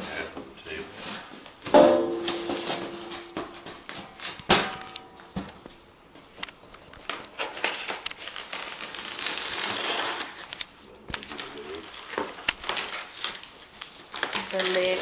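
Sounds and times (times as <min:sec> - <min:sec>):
wrapping rustling: 0:06.8 - 0:15.0.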